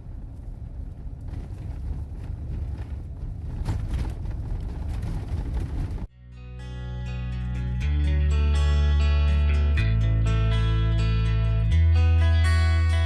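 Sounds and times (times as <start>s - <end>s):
vehicle road and engine rumble: 0.0s - 6.1s
strummed acoustic guitar music: 6.1s - 13.0s.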